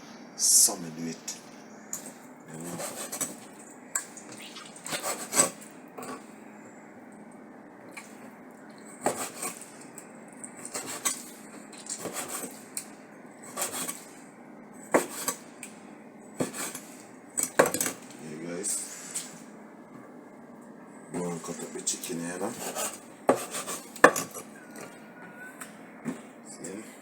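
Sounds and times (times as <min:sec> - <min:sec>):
knife cutting on cutting board: 0:09.0 - 0:09.6, 0:10.6 - 0:11.2, 0:11.9 - 0:12.6, 0:13.5 - 0:14.1, 0:15.0 - 0:15.4, 0:16.4 - 0:16.8, 0:22.4 - 0:24.4.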